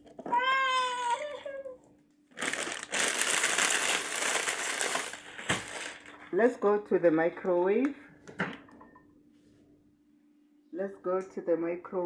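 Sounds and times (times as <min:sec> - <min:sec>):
baby crying: 0:00.3 - 0:01.8
plastic wrapping crinkling: 0:02.3 - 0:06.4.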